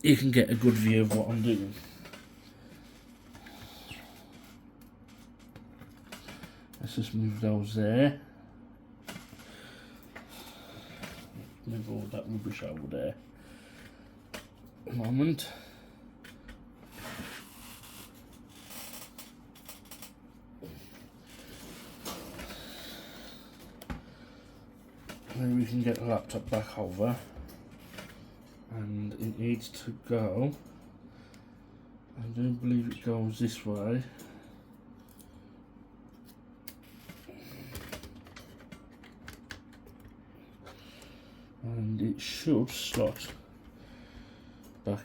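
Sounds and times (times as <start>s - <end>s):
objects rubbing and shuffling: 0.4s - 6.5s, 16.3s - 23.8s.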